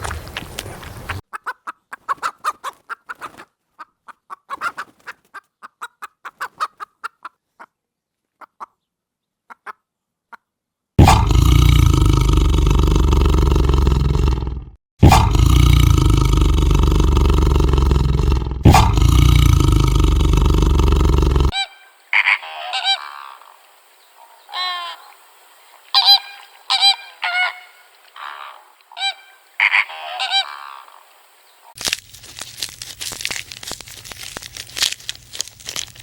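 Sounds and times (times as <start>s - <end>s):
bird clucking: 0.8s - 7.8s, 8.4s - 8.9s, 9.5s - 10.5s, 21.5s - 23.6s, 25.9s - 31.1s
loud animal roar: 11.0s - 21.6s.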